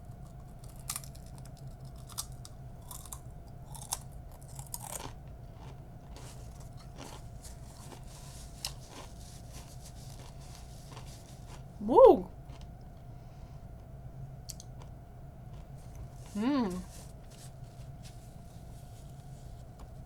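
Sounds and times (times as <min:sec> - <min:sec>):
soft chewing: 0:00.0 - 0:11.8, 0:12.4 - 0:13.2, 0:13.8 - 0:20.0
crisp chip crunches: 0:00.2 - 0:11.7.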